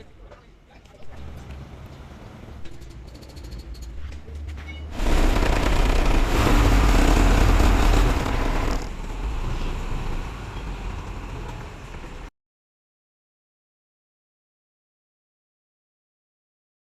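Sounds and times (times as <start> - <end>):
truck engine running: 1.0 - 12.3.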